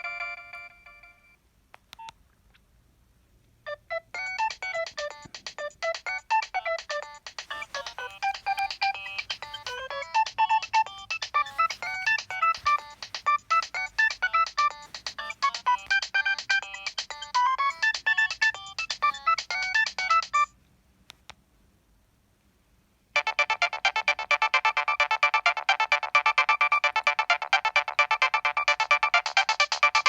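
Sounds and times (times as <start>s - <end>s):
electronic ringtone melody: 3.7s - 20.5s, 23.2s - 30.0s.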